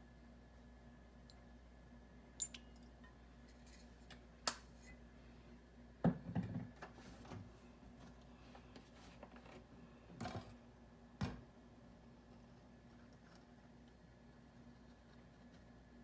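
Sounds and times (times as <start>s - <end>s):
soft handling noise: 6.8s - 10.6s.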